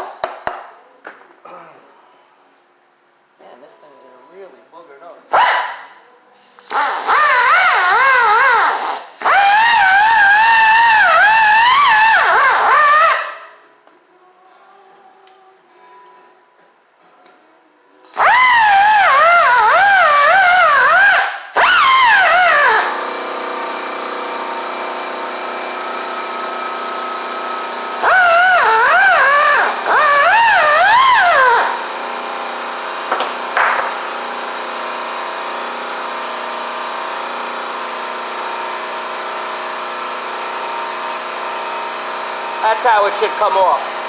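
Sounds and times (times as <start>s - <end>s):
grinder cutting metal: 6.6s - 13.5s, 18.1s - 34.4s.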